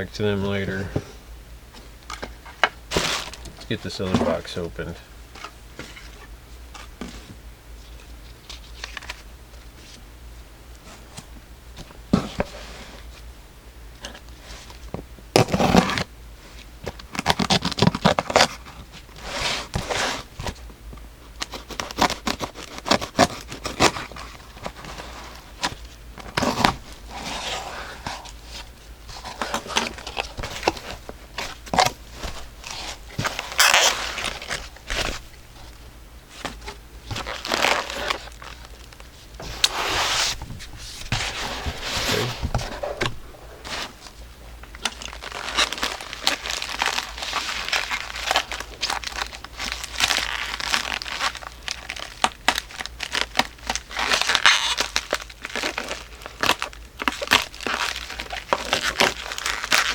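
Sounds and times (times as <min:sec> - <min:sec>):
packing material crinkling: 0:16.8 - 0:20.6, 0:21.4 - 0:59.9
packaging tearing: 0:21.4 - 0:27.8, 0:29.2 - 0:35.2, 0:37.1 - 0:44.0, 0:44.7 - 0:59.9.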